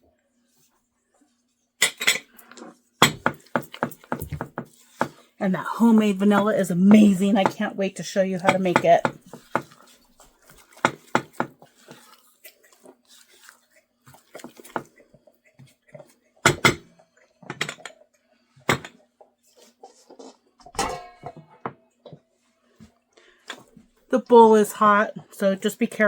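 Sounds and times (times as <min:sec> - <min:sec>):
spoon scraping against bowl: 0:08.4 - 0:15.0.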